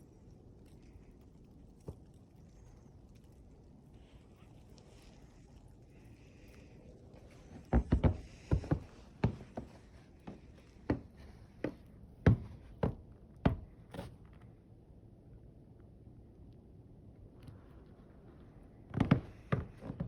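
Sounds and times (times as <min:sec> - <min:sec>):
faint steady hiss: 0:00.0 - 0:12.4
dull thumps: 0:07.5 - 0:14.2.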